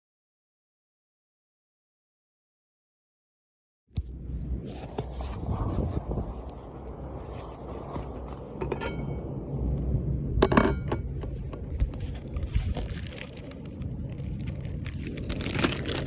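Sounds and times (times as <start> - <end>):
rustling: 4.0 - 9.1, 11.1 - 16.0
steady low rumble: 4.0 - 16.0.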